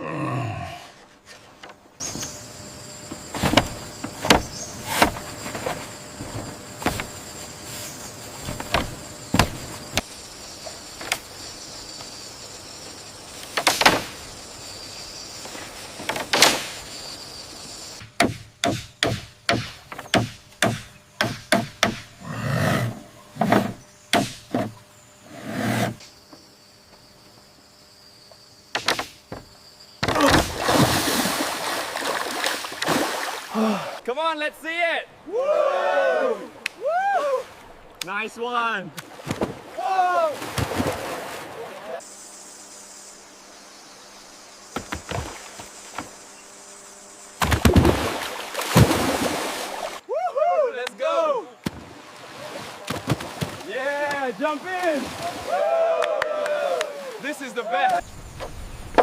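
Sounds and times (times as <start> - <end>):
bamboo poles knocking: 18.1 - 22.1, 28.8 - 29.4.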